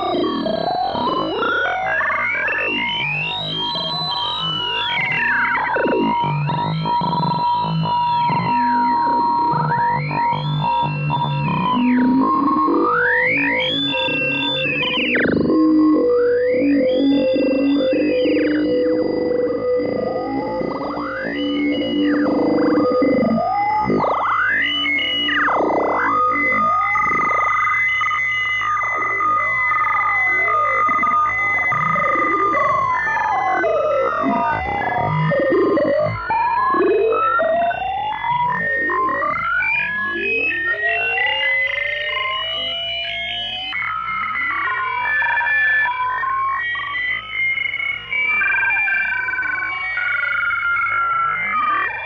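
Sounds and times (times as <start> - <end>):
steady held electronic tone: 0.0 - 52.0
electronic blips: 4.4 - 27.6.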